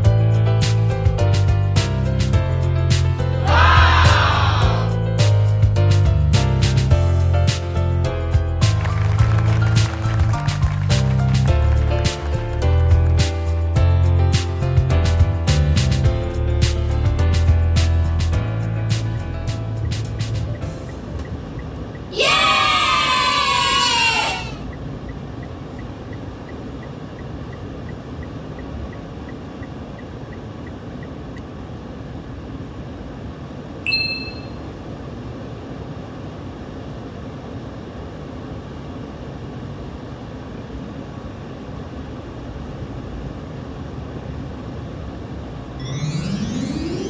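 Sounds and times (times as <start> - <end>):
short electronic beep: 33.9 - 34.6
rising electronic sweep: 45.8 - 47.0.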